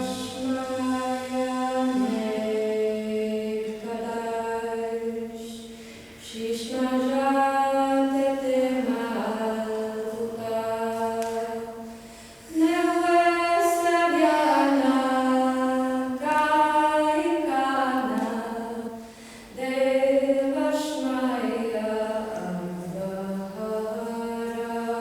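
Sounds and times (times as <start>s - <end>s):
voices singing wordless tones: 12.5s - 19.0s.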